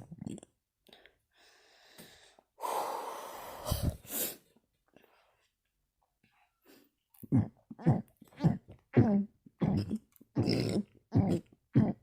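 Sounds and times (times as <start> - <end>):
long rush of breath: 1.4 - 4.5
person burping: 7.2 - 12.0.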